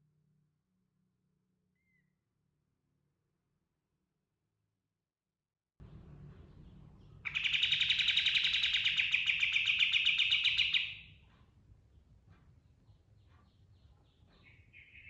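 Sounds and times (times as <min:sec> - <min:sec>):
bird rapid rolling trill: 0:07.2 - 0:11.1.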